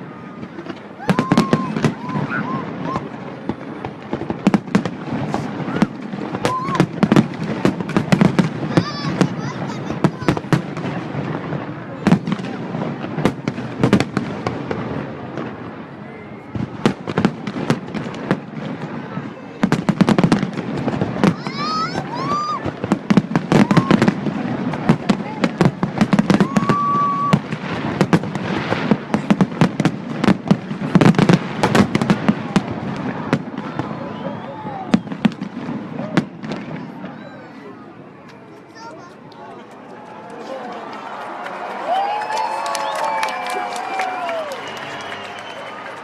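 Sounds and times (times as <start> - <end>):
fireworks banging: 0.0 - 37.4
steady high whistle: 44.2 - 45.9.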